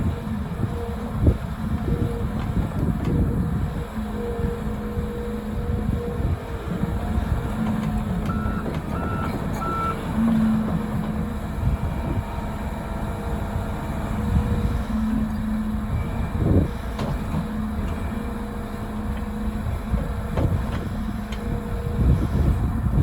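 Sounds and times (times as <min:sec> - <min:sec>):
excavator engine and hydraulics: 0:00.0 - 0:23.0
backup alarm beeping: 0:08.3 - 0:10.1.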